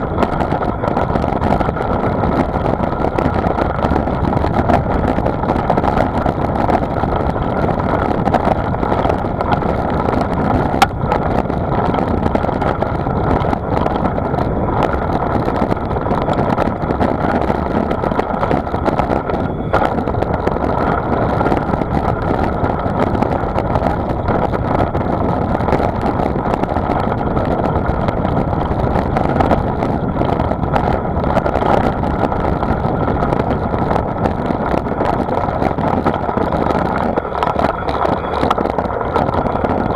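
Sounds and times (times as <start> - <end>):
vehicle in motion: 0.0 - 39.9
wind on microphone: 0.0 - 39.9.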